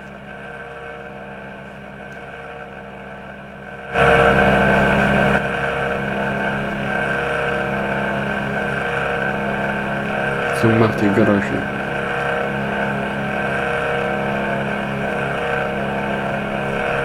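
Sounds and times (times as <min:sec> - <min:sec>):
laptop fan whirring: 0:00.0 - 0:17.0.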